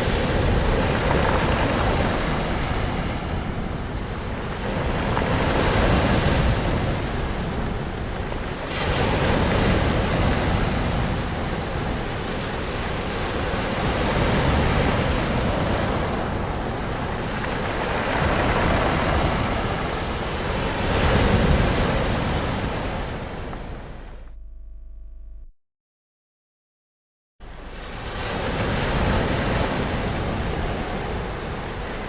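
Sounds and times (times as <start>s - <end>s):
ocean waves breaking: 0.0s - 24.3s, 27.4s - 32.0s.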